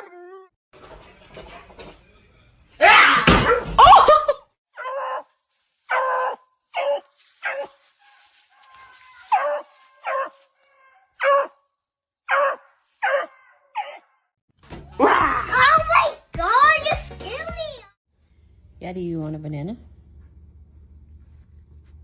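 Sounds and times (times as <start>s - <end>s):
dog barking: 5.9s - 11.6s, 12.2s - 14.2s.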